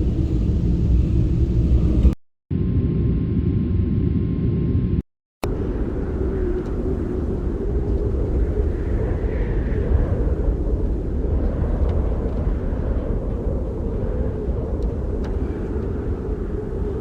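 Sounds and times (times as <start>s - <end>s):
low steady rumbling: 0.0s - 17.0s.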